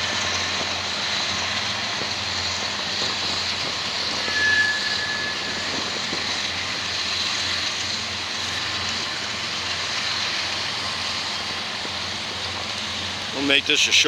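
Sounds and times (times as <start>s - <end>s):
train wheels on rails: 0.0s - 14.0s
wind on microphone: 2.8s - 7.0s
high squeal: 4.0s - 6.3s.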